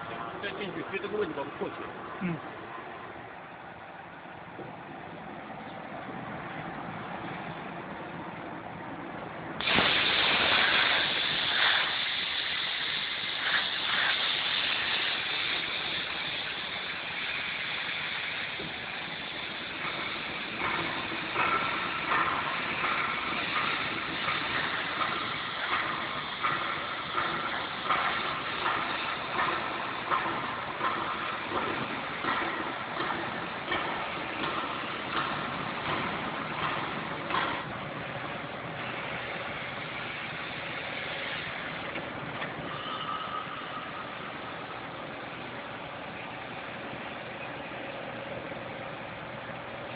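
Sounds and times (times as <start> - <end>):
machine hissing mechanical noise: 9.6 - 49.9.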